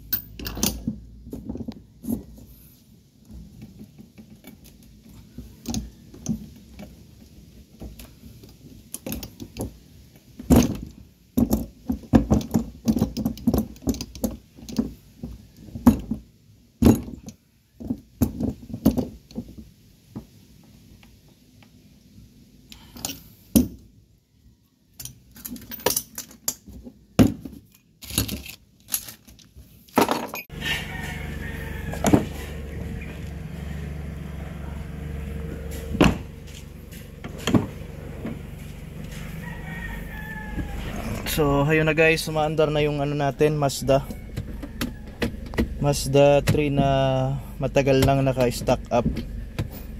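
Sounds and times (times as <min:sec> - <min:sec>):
car engine idling: 0:30.5 - 0:49.9.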